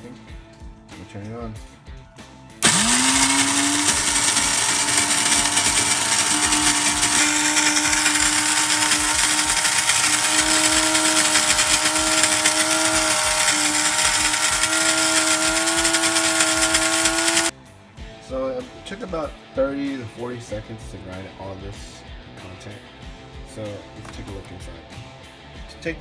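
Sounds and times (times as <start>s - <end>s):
coffee grinder grinding beans: 2.6s - 17.5s.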